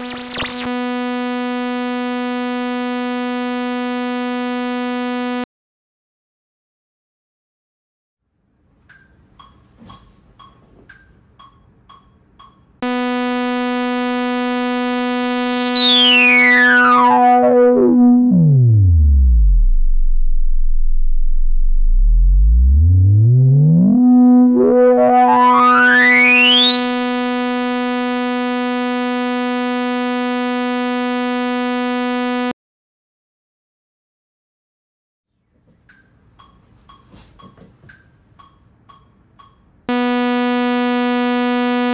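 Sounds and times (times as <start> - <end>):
synthesizer filter sweep: 0.0 - 5.4, 12.8 - 32.5, 39.9 - 41.9.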